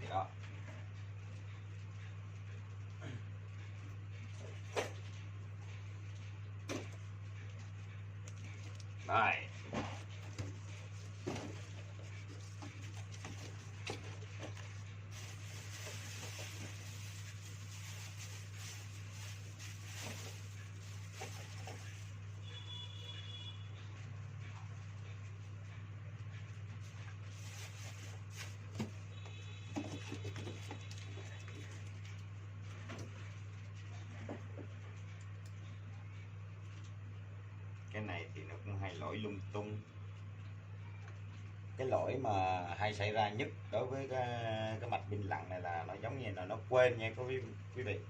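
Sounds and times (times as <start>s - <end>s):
low electrical hum: 0.0s - 48.0s.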